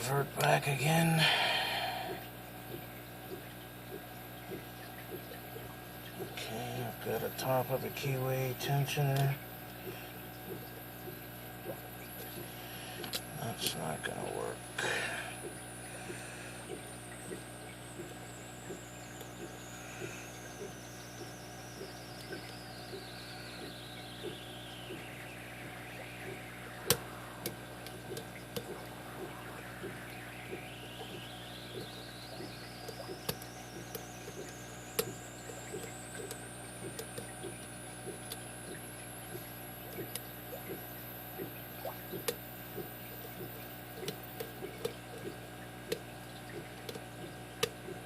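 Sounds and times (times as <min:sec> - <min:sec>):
electrical hum: 0:00.0 - 0:48.0
faint high whine: 0:00.0 - 0:48.0
sharp clicks: 0:18.0 - 0:40.8.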